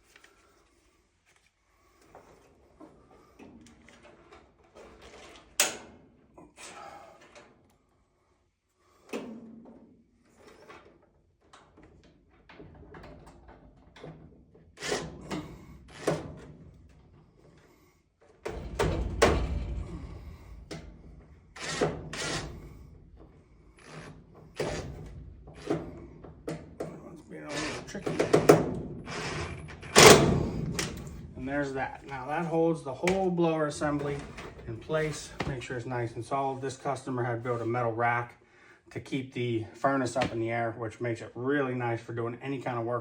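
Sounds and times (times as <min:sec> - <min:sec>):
metal knocks and scraping: 0:18.4 - 0:35.9.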